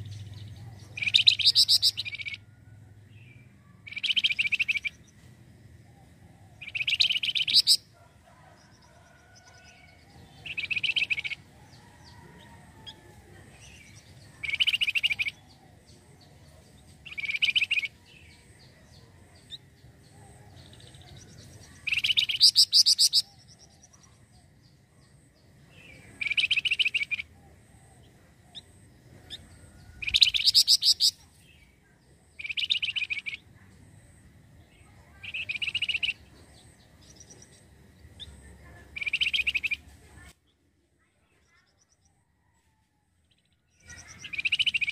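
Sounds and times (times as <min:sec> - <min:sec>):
songbird trilling: 0:00.0 - 0:02.5, 0:03.1 - 0:05.2, 0:05.9 - 0:08.0, 0:09.4 - 0:12.2, 0:12.8 - 0:18.8, 0:19.4 - 0:24.1, 0:25.7 - 0:31.7, 0:32.3 - 0:33.5, 0:34.6 - 0:39.9, 0:43.7 - 0:44.9.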